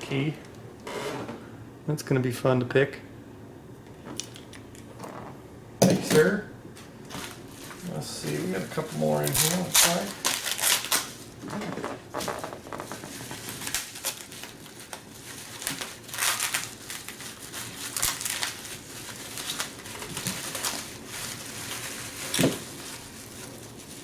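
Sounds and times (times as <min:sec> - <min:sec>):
packaging rustling and crinkling: 0:07.1 - 0:24.0.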